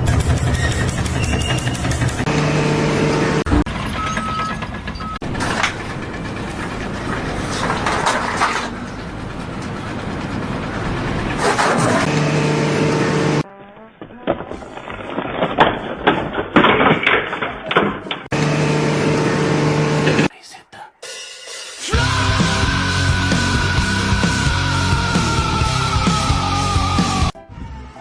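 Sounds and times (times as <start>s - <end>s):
engines running: 0.0s - 13.4s, 18.3s - 20.3s.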